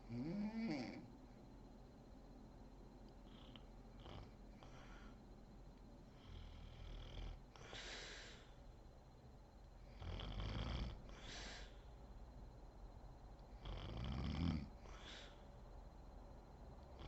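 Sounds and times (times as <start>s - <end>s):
woman snoring: 0.0s - 1.1s, 9.9s - 11.7s, 13.6s - 15.4s.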